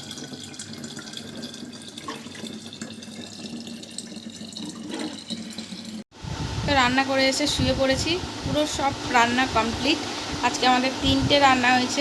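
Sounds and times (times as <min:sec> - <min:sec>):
water running from a tap: 0:00.0 - 0:06.1.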